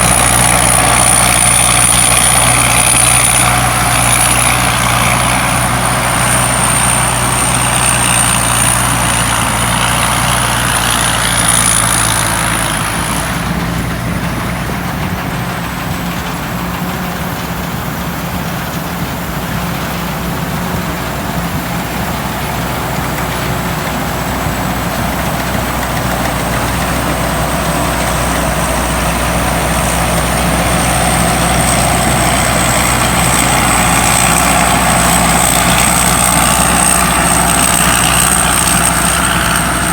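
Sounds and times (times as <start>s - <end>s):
harvester engine drone: 0.0s - 39.9s.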